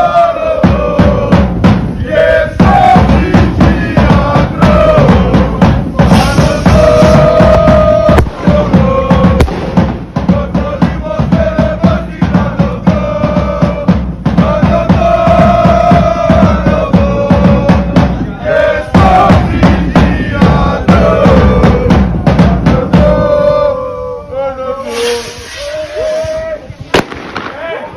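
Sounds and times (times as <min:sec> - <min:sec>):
heavy drumming: 0:00.0 - 0:24.0.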